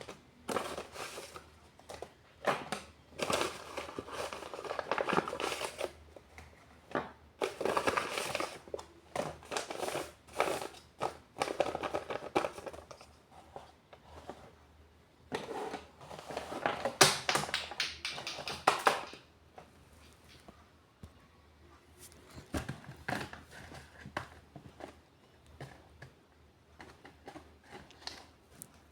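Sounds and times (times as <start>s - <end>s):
paper crinkling and rustling: 0.0s - 14.5s.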